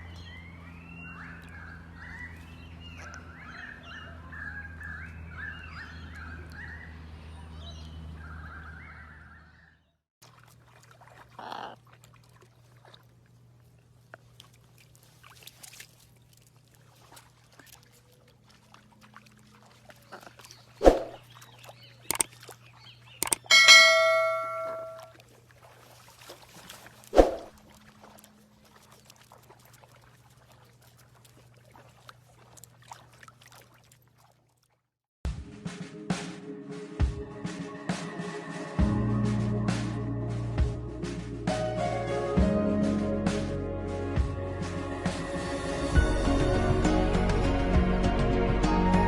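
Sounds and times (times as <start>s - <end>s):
bell-like ringing tone: 23.2s - 25.1s.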